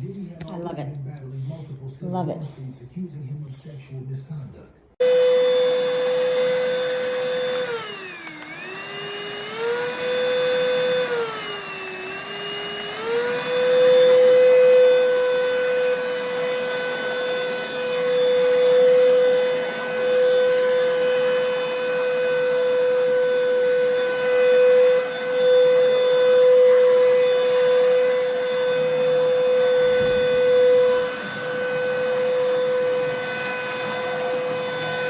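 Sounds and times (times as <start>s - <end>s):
vacuum cleaner motor whine: 5.0s - 35.0s.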